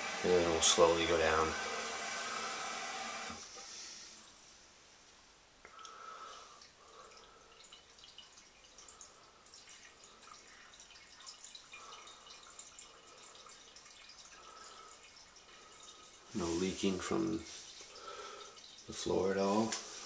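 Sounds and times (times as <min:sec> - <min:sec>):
water trickling and dripping: 0:05.6 - 0:20.0.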